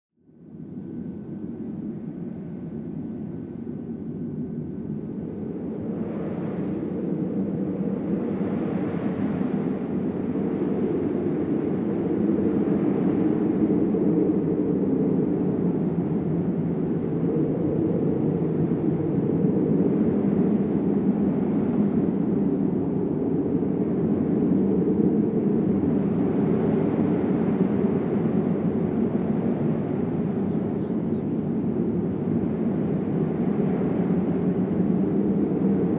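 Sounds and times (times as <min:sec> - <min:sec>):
low rushing wind: 0:00.2 - 0:35.9.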